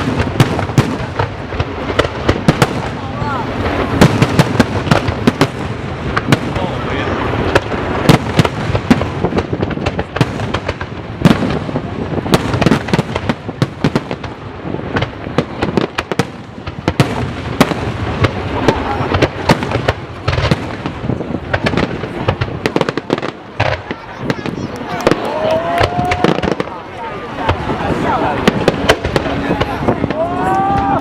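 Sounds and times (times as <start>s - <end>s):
fireworks bangs: 0.0s - 31.0s
rumble of crackling bursts: 0.0s - 31.0s.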